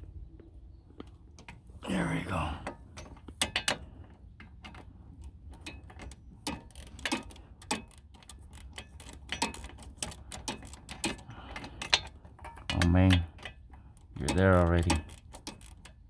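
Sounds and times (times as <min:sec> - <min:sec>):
socket ratchet clicking: 0:04.5 - 0:16.0.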